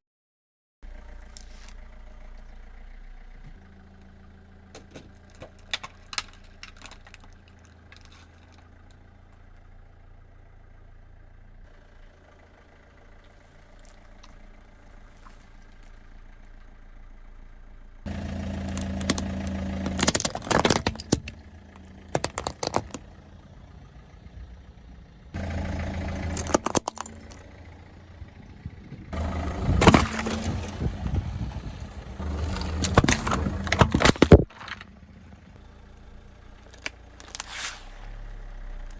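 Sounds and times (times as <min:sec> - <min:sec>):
car engine idling: 0:00.8 - 0:38.9
tyres crushing objects: 0:18.1 - 0:23.3, 0:26.2 - 0:27.5, 0:29.2 - 0:34.9.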